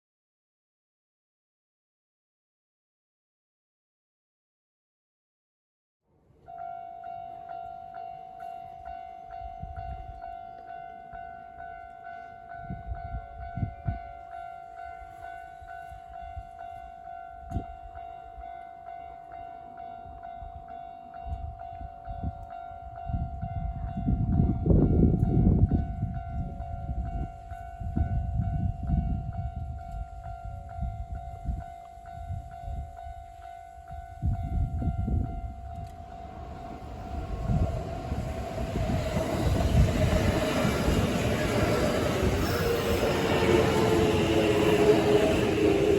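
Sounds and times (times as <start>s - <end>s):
train rumble: 33.9s - 45.9s
level crossing alarm ringing: 36.0s - 45.9s.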